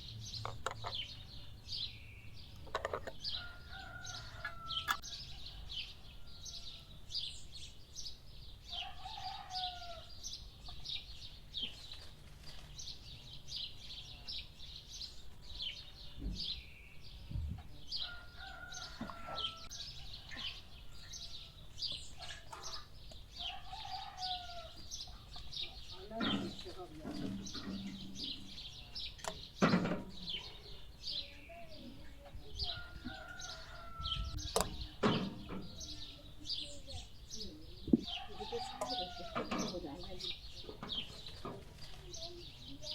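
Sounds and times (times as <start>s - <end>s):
small birds chirping: 0.0s - 42.9s
chickens clucking: 17.3s - 42.9s
low thumps: 37.8s - 38.2s.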